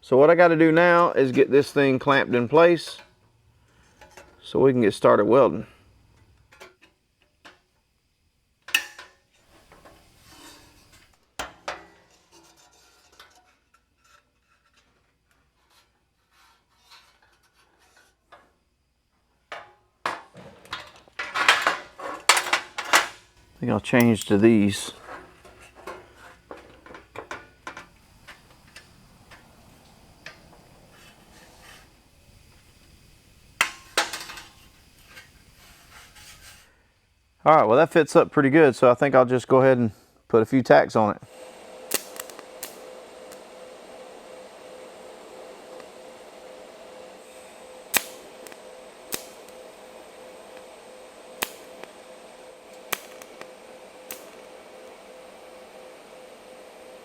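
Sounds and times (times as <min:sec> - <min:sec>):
steady welder hum: 0:08.2 - 0:13.8, 0:19.0 - 0:39.4, 0:40.3 - 0:57.0
sharp metal clanks: 0:08.7 - 0:09.2
welder snapping: 0:08.7 - 0:10.1, 0:23.8 - 0:29.5, 0:41.9 - 0:43.6, 0:47.2 - 0:55.9
metal clamps clicking: 0:41.9 - 0:42.8, 0:47.9 - 0:49.6, 0:51.4 - 0:52.0, 0:52.7 - 0:53.5, 0:54.1 - 0:54.6.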